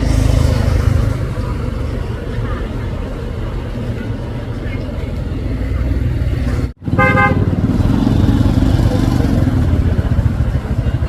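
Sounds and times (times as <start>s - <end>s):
vehicle engine rumble: 0.0s - 11.0s
short horn toot: 6.9s - 7.5s.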